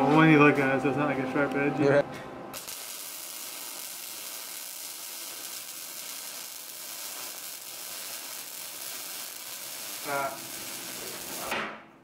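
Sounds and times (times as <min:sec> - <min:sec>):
steady sizzling hiss: 0:02.6 - 0:11.5.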